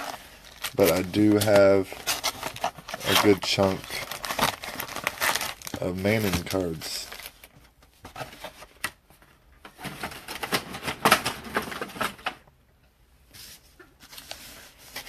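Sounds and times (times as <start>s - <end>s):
foil packs rustling: 0.0s - 8.8s.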